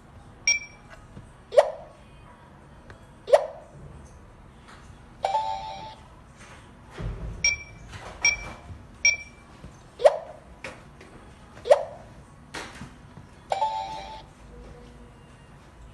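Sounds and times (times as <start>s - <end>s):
burglar alarm beeps: 0.5s - 0.9s, 5.2s - 6.0s, 7.4s - 9.5s, 13.5s - 14.3s.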